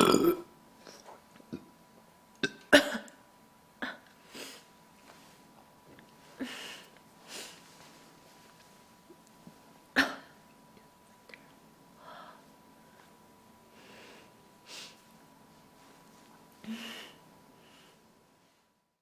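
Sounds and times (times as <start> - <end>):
woman burping: 0.0 - 0.5, 2.4 - 3.2.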